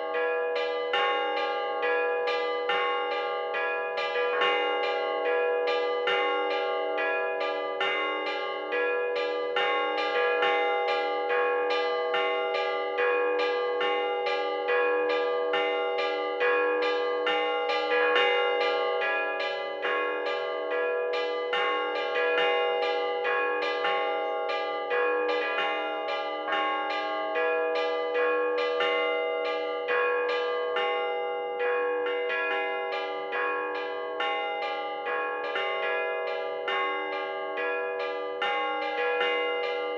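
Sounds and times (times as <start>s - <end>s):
church bells ringing: 0.0s - 39.9s.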